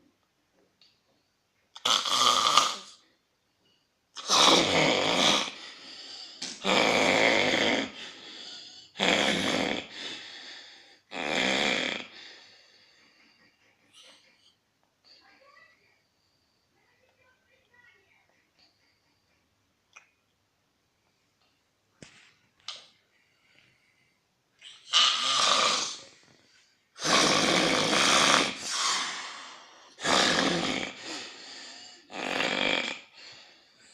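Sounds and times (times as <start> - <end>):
loud snoring: 1.8 - 3.0, 4.2 - 5.7, 6.6 - 10.2, 11.1 - 12.4, 24.8 - 26.1, 27.0 - 33.4.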